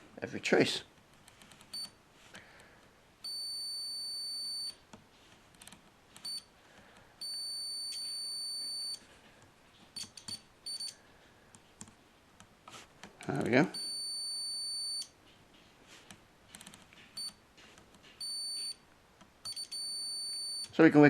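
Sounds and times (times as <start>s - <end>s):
multimeter continuity beeps: 1.7s - 2.0s, 3.2s - 4.8s, 6.2s - 6.5s, 7.2s - 9.0s, 10.0s - 11.0s, 13.7s - 15.2s, 17.2s - 17.4s, 18.2s - 18.8s, 19.4s - 20.8s.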